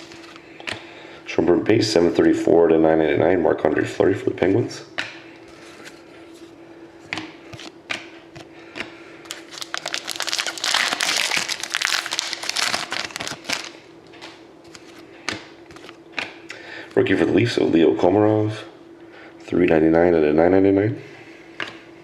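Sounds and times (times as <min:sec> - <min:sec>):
foil wrapper tearing and crinkling: 0:09.3 - 0:13.8.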